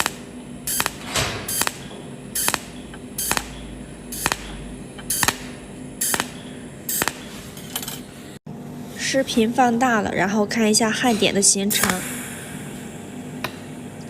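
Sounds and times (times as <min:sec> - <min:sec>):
welding machine zaps: 0:00.0 - 0:07.6.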